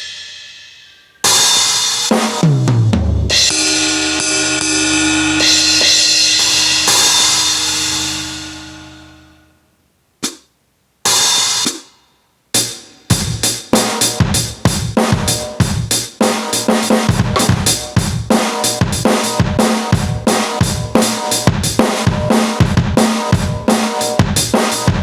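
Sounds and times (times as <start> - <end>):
electronic drum strikes: 2.4 - 9.2, 13.1 - 25.0
cymbal crash: 3.3 - 9.5.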